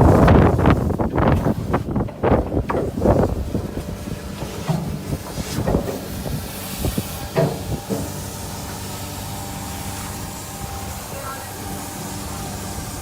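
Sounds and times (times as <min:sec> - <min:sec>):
truck mechanical hum: 0:00.0 - 0:13.0
rushing air hiss: 0:02.9 - 0:13.0.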